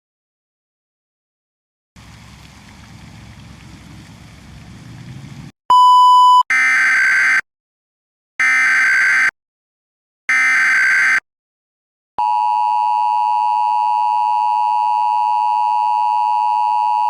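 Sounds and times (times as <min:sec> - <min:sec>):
short steady beep: 0:05.7 - 0:06.4.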